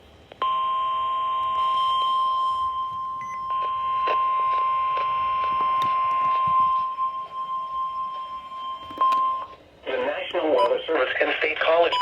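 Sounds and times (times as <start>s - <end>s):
steady alarm tone: 0.4s - 9.6s
radio static clicks: 3.6s - 6.9s.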